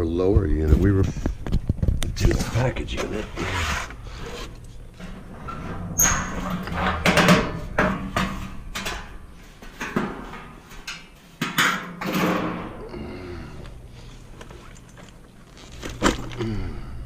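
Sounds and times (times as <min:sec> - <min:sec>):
tools clanking and scraping: 0:02.3 - 0:12.8
squeak: 0:06.0 - 0:06.4.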